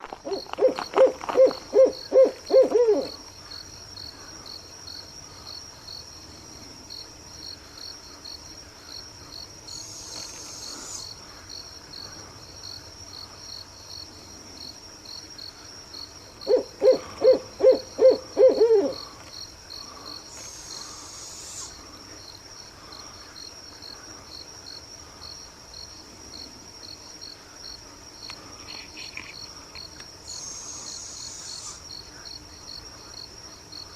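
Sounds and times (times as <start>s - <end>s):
crickets chirping: 0.0s - 33.9s
owl hooting: 0.2s - 3.2s, 16.4s - 19.2s, 20.3s - 21.8s, 30.3s - 31.8s.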